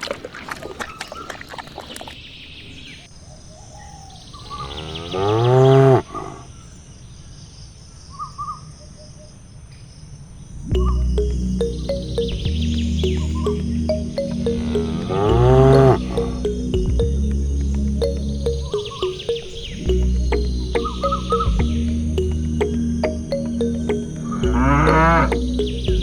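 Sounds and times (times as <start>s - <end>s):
music: 10.7s - 26.0s
cow mooing: 14.6s - 16.4s.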